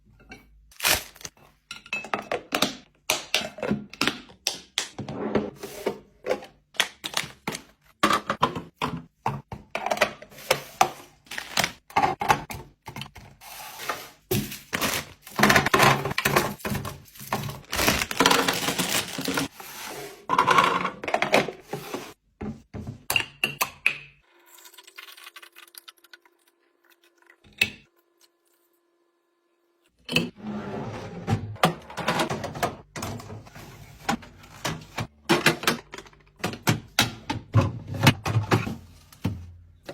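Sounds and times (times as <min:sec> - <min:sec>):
containers clicking and thunking: 0:01.7 - 0:13.4, 0:14.3 - 0:19.5, 0:20.3 - 0:24.2, 0:31.3 - 0:39.9.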